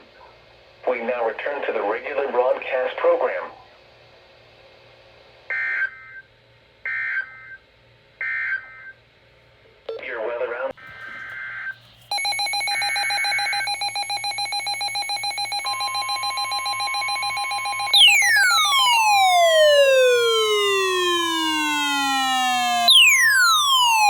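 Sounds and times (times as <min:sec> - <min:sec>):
screechy data bursts: 0:11.0 - 0:24.0
pulsing electronic alarm tone: 0:11.2 - 0:24.0
steady high tone: 0:12.1 - 0:24.0
falling siren-like sweeps: 0:16.5 - 0:24.0.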